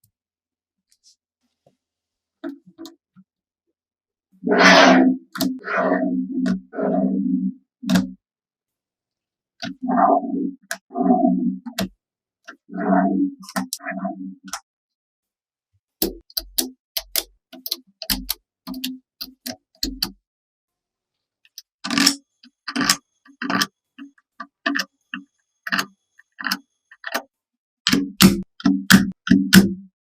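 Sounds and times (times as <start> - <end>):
small parts tapping and clicking: 16.0 - 20.2, 21.4 - 27.3.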